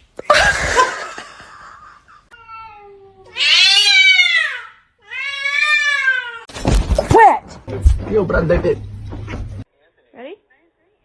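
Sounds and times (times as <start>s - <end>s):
cat meowing in long yowls: 2.5s - 6.5s.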